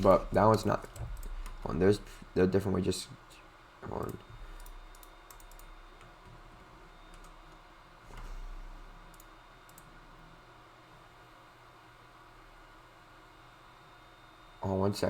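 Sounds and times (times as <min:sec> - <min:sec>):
steady low hum: 0:00.0 - 0:15.0
computer mouse clicks: 0:04.0 - 0:06.2, 0:07.1 - 0:08.3, 0:09.1 - 0:09.9.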